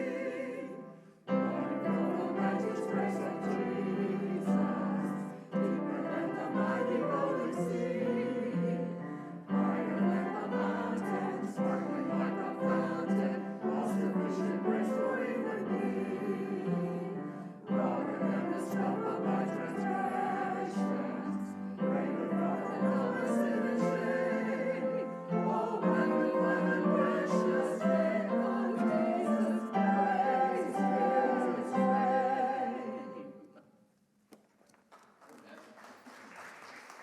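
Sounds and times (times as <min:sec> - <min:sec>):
group singing a hymn: 0:00.0 - 0:33.6.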